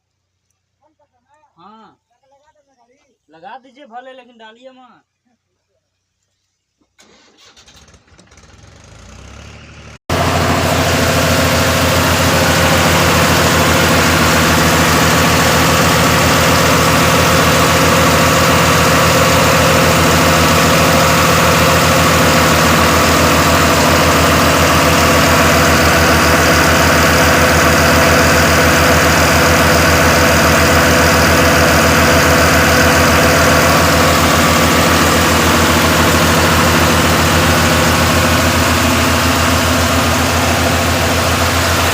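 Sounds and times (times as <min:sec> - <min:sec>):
diesel engine idling: 0:08.7 - 0:41.9.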